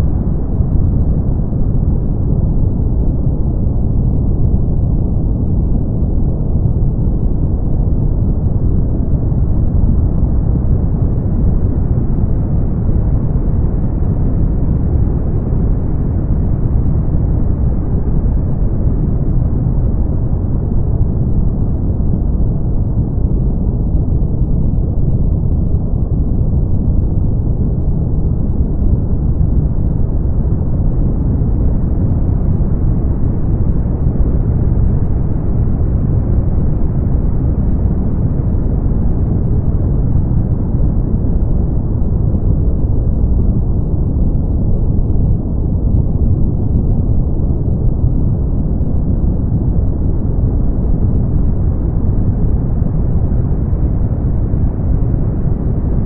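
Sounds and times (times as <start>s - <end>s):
deep rumbling brown noise: 0.0s - 56.0s.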